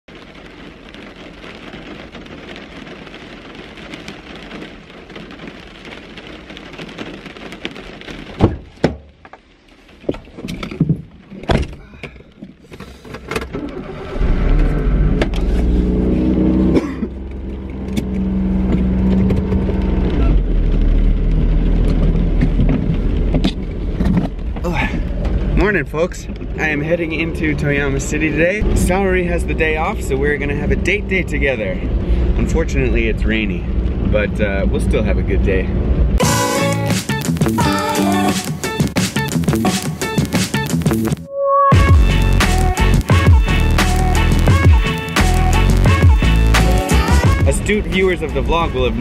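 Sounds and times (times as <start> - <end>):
car engine starting and running: 10.5 - 49.0.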